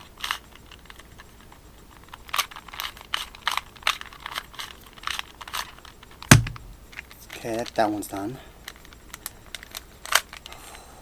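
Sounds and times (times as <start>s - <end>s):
sharp knock with low thud: 6.3s - 6.8s.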